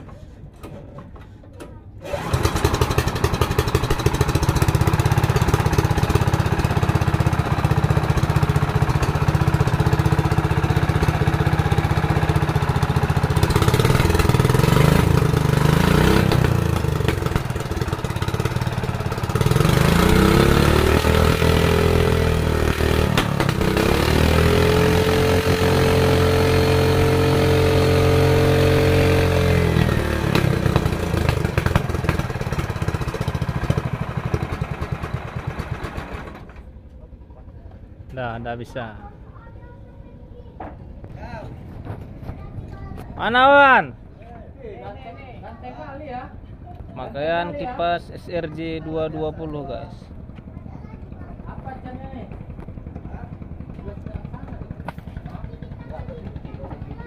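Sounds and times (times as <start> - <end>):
small boat engine running: 2.0 - 38.0, 50.0 - 57.0.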